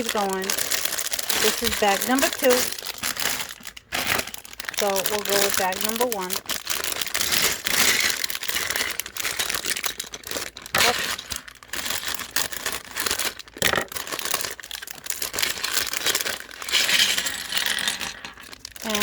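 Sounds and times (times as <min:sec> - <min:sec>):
plastic bag tearing and crinkling: 0:00.0 - 0:19.0.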